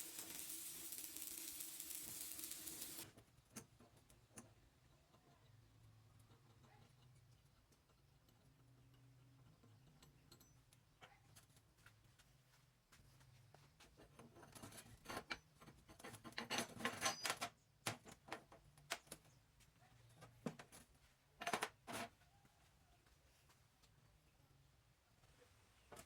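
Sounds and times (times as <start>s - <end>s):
small metal clatter: 14.0s - 19.3s.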